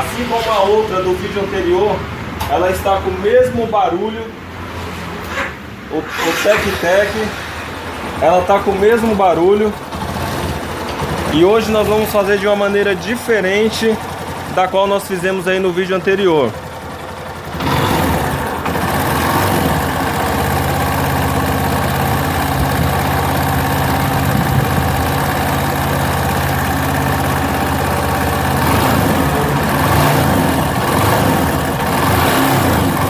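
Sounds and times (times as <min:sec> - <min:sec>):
motorcycle engine idling: 0:07.8 - 0:33.0
rapid mechanical ticking: 0:08.0 - 0:33.0.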